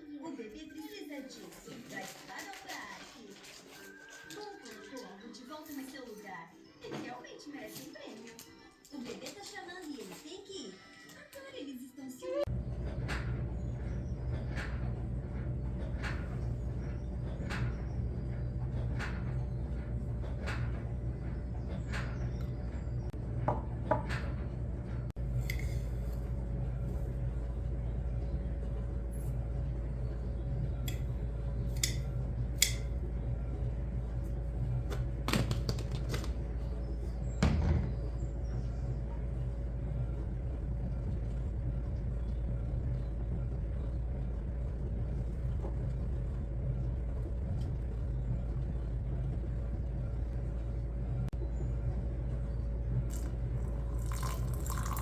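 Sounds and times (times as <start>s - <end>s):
steady low hum: 12.4s - 55.0s
utensils clicking and knocking: 30.8s - 33.0s.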